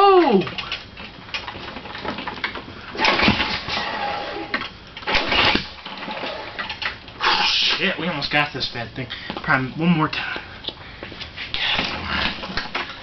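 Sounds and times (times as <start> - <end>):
mower engine pull-start: 3.0 - 4.4, 5.1 - 6.8.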